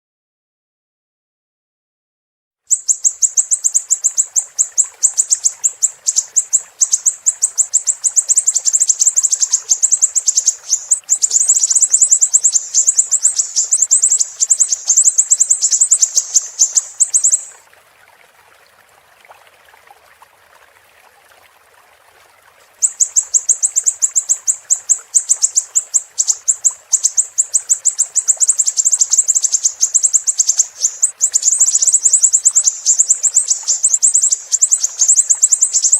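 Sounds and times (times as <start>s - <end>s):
songbird twittering: 2.7s - 17.6s, 22.8s - 35.9s
faint steady hiss: 2.7s - 35.9s.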